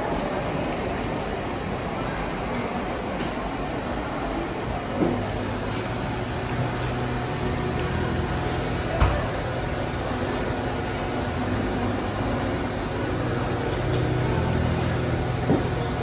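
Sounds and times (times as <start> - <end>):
machine running with low hum: 5.0 - 16.0.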